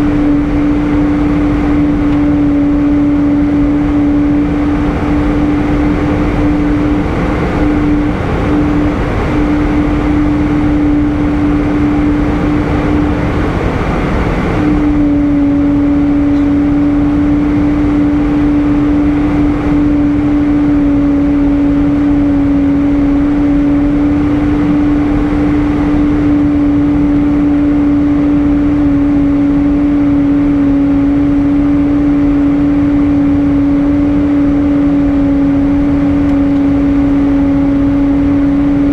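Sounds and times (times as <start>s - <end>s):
airplane cabin engine drone: 0.0s - 38.9s.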